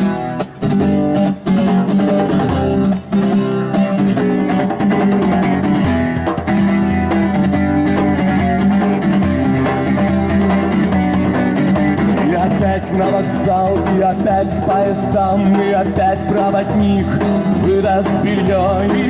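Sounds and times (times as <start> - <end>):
steady drum beat: 0.0 - 19.0
strummed guitars: 0.0 - 19.0.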